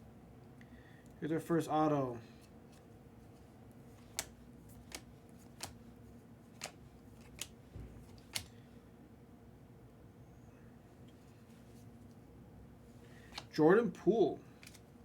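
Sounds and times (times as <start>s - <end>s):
faint steady hum: 0.0s - 15.0s
trading cards clicking: 4.0s - 5.9s, 6.5s - 8.6s, 13.2s - 13.5s, 14.6s - 14.9s.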